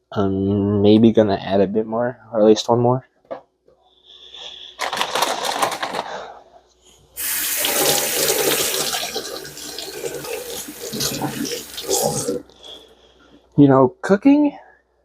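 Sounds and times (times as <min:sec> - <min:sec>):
tap water splashing into sink: 0:07.2 - 0:12.4.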